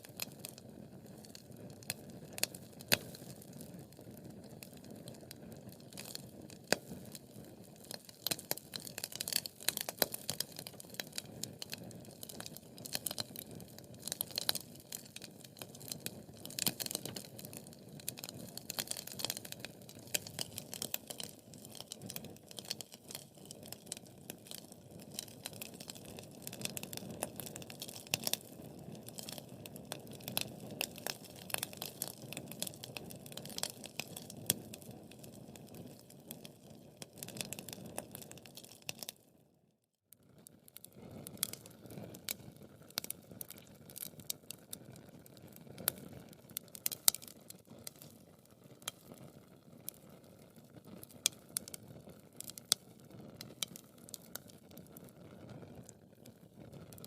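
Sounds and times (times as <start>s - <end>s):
wood fire crackling: 0.0s - 39.3s, 40.4s - 57.0s.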